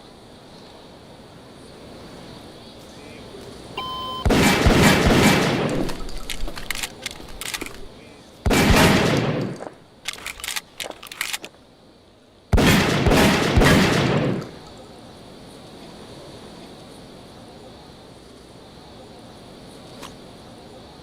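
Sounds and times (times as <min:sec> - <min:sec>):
heavy gunshot blasts echoing: 0:04.2 - 0:06.0, 0:08.5 - 0:09.6, 0:12.6 - 0:14.6
quick sharp gunshot cracks: 0:04.2 - 0:06.2, 0:08.5 - 0:09.8, 0:12.6 - 0:14.7.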